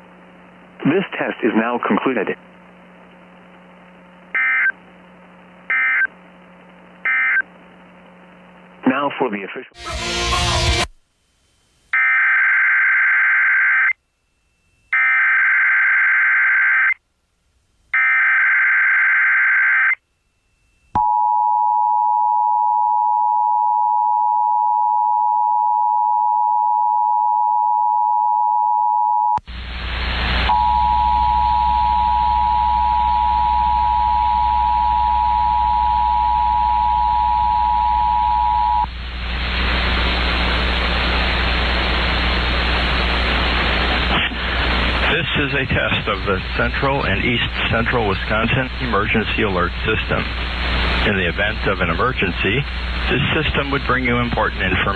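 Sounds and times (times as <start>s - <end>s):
loud radio static: 0.6s - 5.0s, 8.8s - 10.9s, 29.4s - 30.6s, 37.7s - 54.9s.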